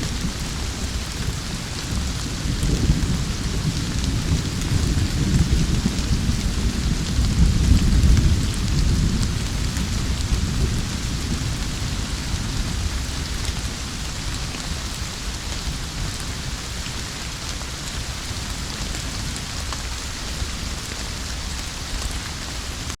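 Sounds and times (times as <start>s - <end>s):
thunder rumbling: 0.0s - 16.6s
heavy rain falling: 0.0s - 23.0s.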